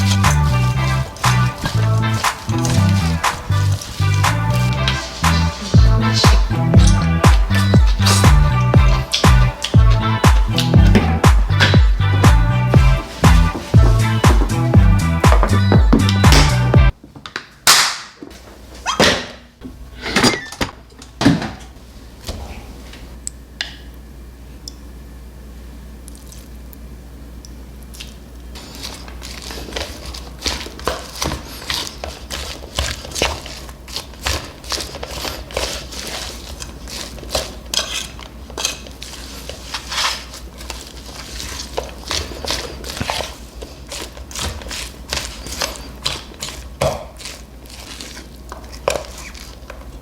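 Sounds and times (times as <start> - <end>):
utensils clicking: 1.1 - 11.8
crunchy chewing: 27.9 - 50.0.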